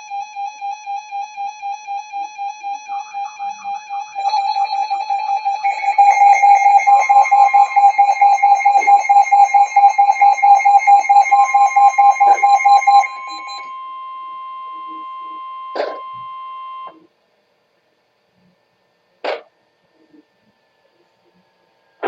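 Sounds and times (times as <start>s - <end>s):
rapidly pulsing alert beeps: 0.0s - 13.7s
steady two-pitch tone: 1.4s - 16.8s
layered beeping tones: 1.5s - 13.7s.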